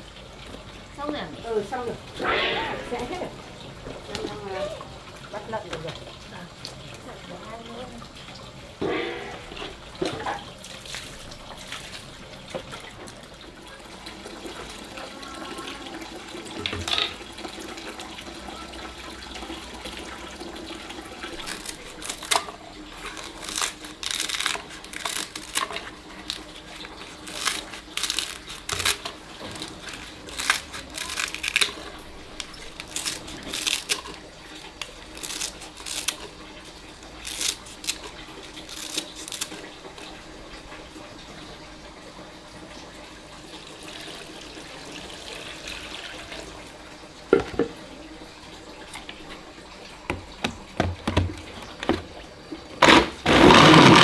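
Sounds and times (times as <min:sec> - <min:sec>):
water running and splashing: 0:00.0 - 0:54.0
knocks and clatter: 0:50.1 - 0:52.1.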